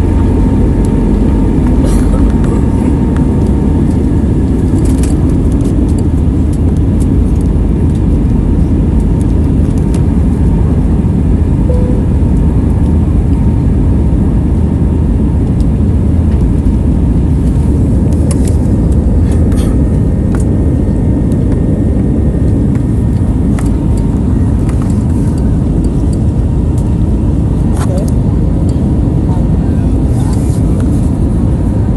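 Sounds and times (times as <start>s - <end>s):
aircraft engines rumbling: 0.0s - 31.9s
faint steady whine: 11.5s - 12.9s.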